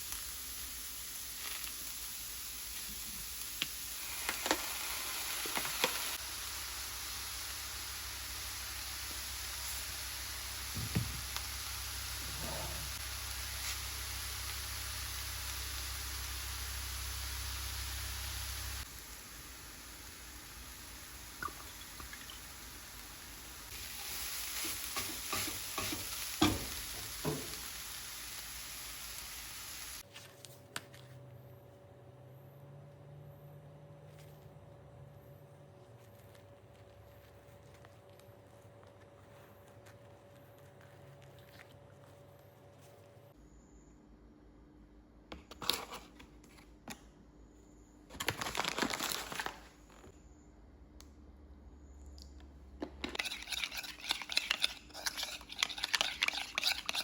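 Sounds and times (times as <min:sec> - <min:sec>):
food sizzling in hot oil: 0:00.0 - 0:30.0, 0:53.2 - 0:57.0
utensil stirring food: 0:23.7 - 0:27.6, 0:52.9 - 0:57.0.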